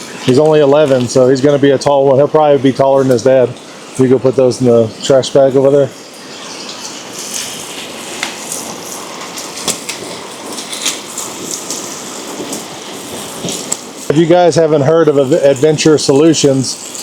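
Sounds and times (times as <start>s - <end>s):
hot dogs sizzling and popping: 0.0s - 17.0s.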